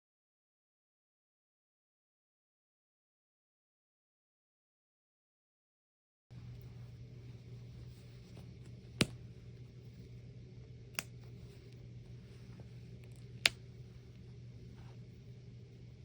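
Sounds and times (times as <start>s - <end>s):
low electrical hum: 6.3s - 16.0s.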